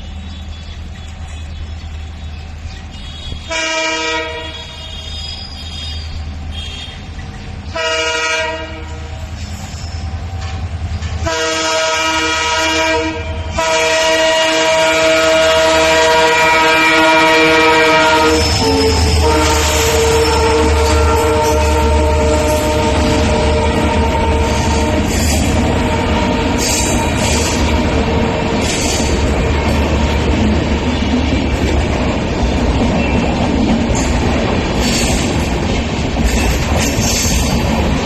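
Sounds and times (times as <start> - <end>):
locomotive horn blasts: 3.0 - 7.0, 7.8 - 9.2, 11.2 - 28.6.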